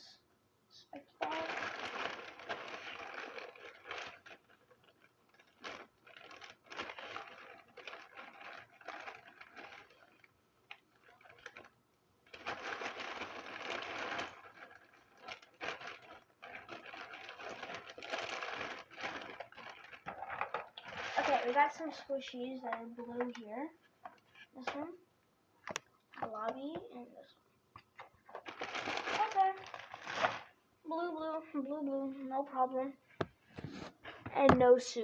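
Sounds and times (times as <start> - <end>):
plastic toys rustling and clattering: 1.0 - 25.0, 25.6 - 35.0.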